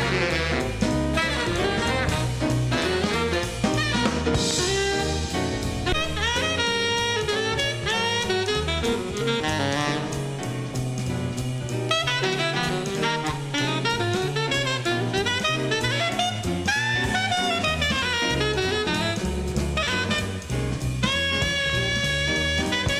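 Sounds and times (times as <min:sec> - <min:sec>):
horns playing short bending notes: 0:00.0 - 0:10.7, 0:11.8 - 0:22.9
bass and drums: 0:00.0 - 0:22.9.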